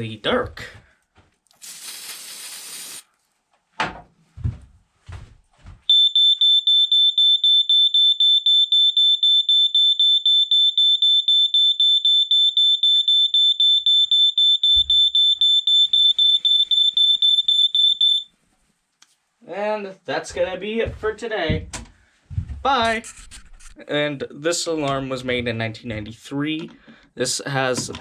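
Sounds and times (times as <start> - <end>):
smoke alarm pulsing tone: 5.9 - 18.3.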